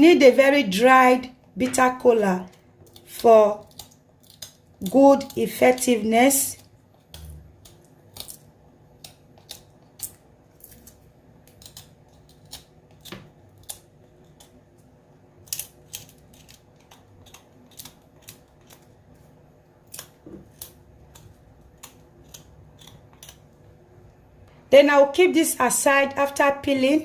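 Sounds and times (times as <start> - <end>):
nut skins clicking and scraping: 2.5 - 19.2, 19.8 - 23.6.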